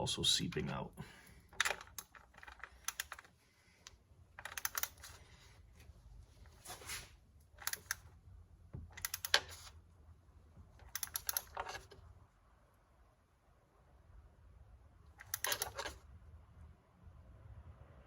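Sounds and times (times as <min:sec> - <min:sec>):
hand ratchet clicking: 0:01.6 - 0:03.2, 0:04.4 - 0:05.1.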